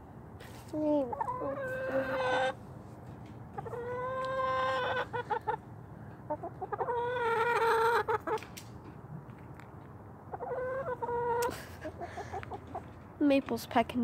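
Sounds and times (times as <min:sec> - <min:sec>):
hen clucking: 0:01.0 - 0:02.6, 0:03.5 - 0:08.5, 0:10.3 - 0:13.0
hen calling: 0:01.1 - 0:02.6.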